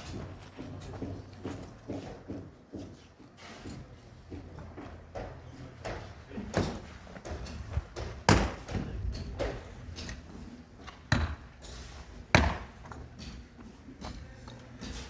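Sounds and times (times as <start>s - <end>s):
sharp knocks and thuds: 5.2s - 9.7s, 12.3s - 13.0s.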